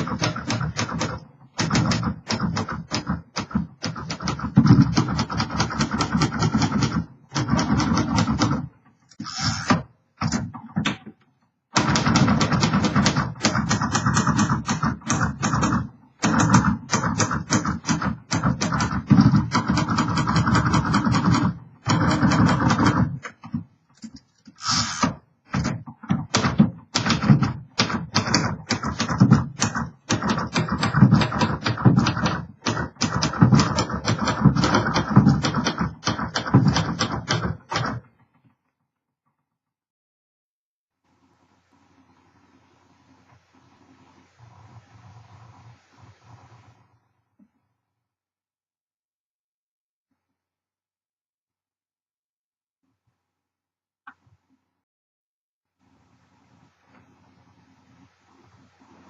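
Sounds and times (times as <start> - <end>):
typewriter keystrokes clacking: 0.0 - 8.7, 11.8 - 23.4, 25.6 - 38.0.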